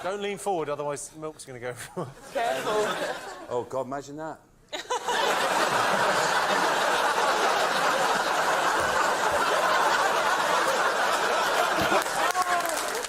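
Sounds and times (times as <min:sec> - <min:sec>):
audience laughing: 0:02.3 - 0:03.5, 0:04.8 - 0:13.0
audience clapping: 0:06.0 - 0:13.0.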